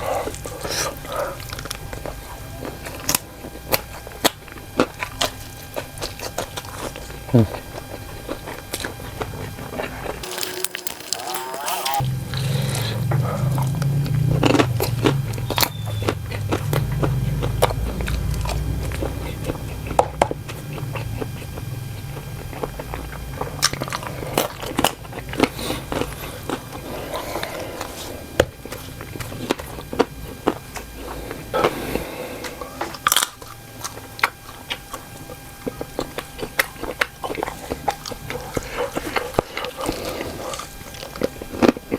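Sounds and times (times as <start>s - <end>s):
biting and chewing mouth sounds: 10.0s - 31.8s, 33.0s - 41.9s.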